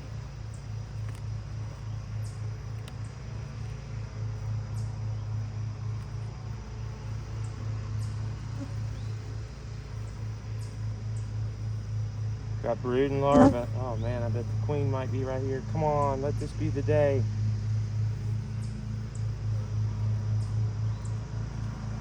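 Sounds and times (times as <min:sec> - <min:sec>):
faint clicks: 0:02.7 - 0:03.1
bees buzzing: 0:12.9 - 0:15.4.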